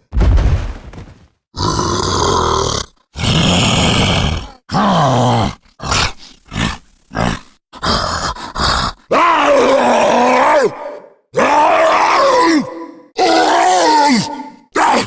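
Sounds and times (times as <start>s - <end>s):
cartoon monster grunts: 1.6s - 9.1s
cartoon monster roar: 1.6s - 15.0s.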